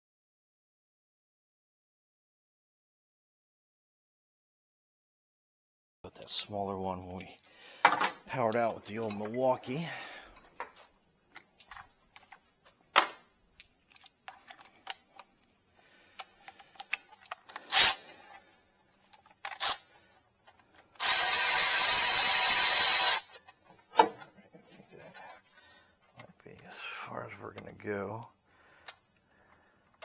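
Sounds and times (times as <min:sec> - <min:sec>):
cordless ratchet spinning a bolt: 0:17.7 - 0:18.0, 0:21.0 - 0:23.3.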